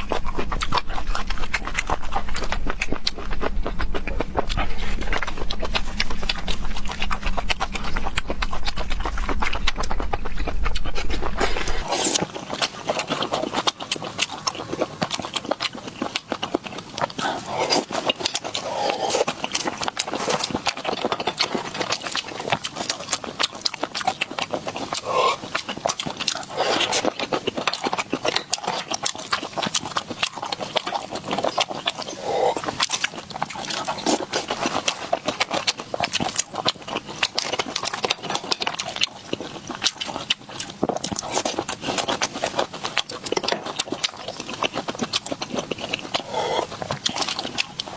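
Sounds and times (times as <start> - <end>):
low hum: 0.0 - 12.2.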